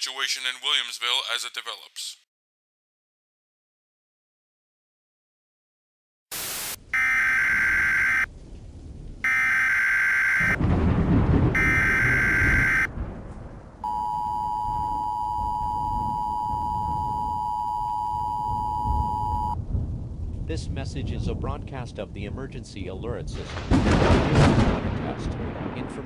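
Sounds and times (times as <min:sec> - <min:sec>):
two-tone attention signal: 0:13.9 - 0:19.6.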